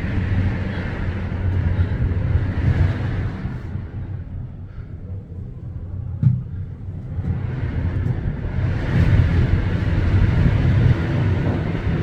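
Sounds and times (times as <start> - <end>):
wind buffeting microphone: 6.0 - 12.0.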